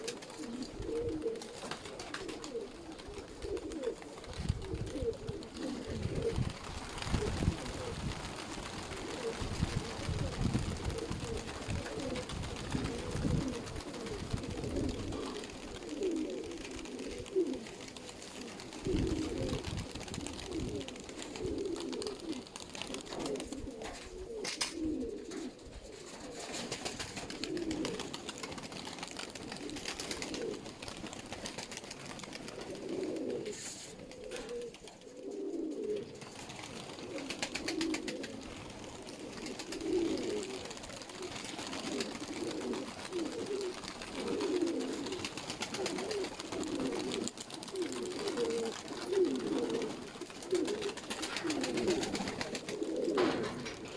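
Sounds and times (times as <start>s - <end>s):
pigeons cooing: 0.0s - 53.9s.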